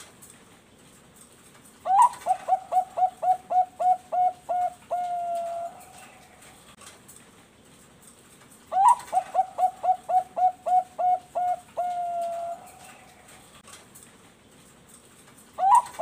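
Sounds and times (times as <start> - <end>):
dove cooing: 1.8 - 6.7, 8.7 - 13.6, 15.6 - 16.0.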